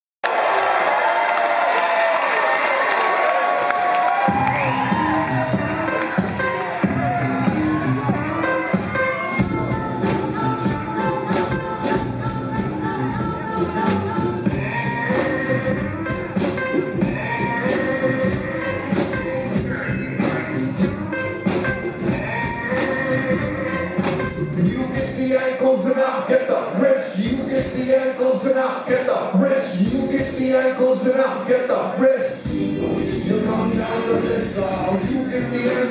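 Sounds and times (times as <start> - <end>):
steady drum beat: 4.1 - 25.2, 29.8 - 30.6, 32.4 - 35.9
live rock band playing: 4.1 - 25.4, 29.8 - 30.7, 32.4 - 35.9.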